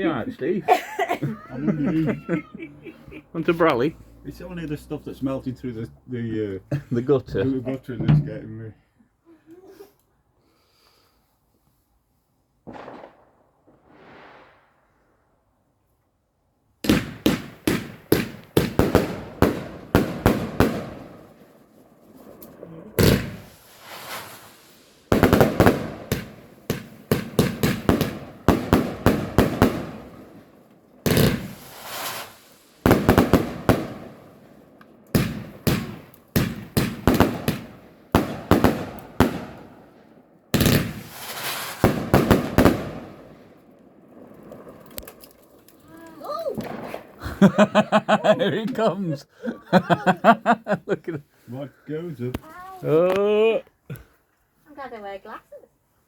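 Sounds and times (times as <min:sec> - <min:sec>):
fireworks bangs: 0:00.0 - 0:05.5, 0:12.6 - 0:15.2, 0:16.8 - 0:45.6, 0:46.2 - 0:48.9.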